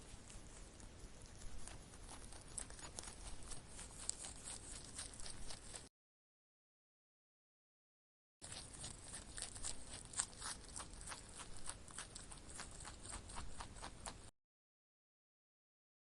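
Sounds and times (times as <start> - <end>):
rabbit crunching food: 0.0 - 5.9, 8.4 - 14.3.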